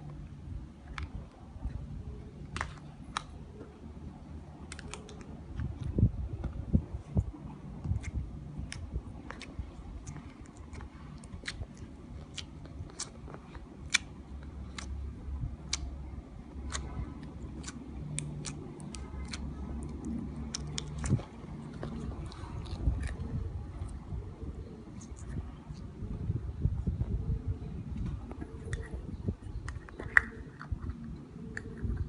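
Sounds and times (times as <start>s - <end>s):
low steady hum: 0.0s - 32.0s.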